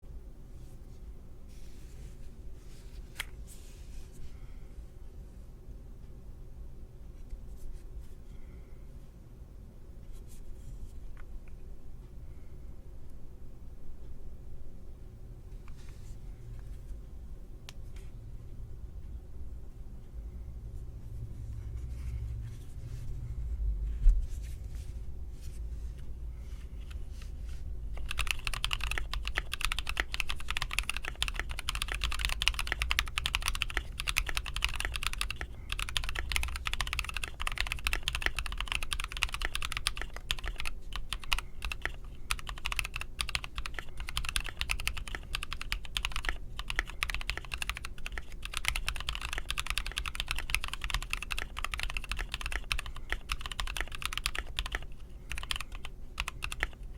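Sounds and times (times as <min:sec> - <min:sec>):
low background hum: 0:00.0 - 0:56.9
mechanical keyboard typing: 0:28.0 - 0:56.8.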